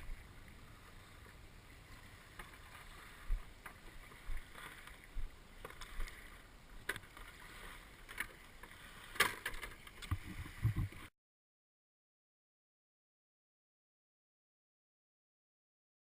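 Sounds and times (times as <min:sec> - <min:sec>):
paddle strokes splashing: 0:00.0 - 0:11.1
water and wind wash: 0:00.0 - 0:11.1.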